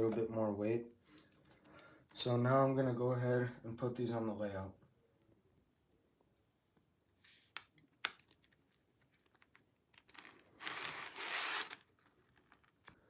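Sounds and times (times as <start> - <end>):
rustling and scraping: 9.0 - 13.0.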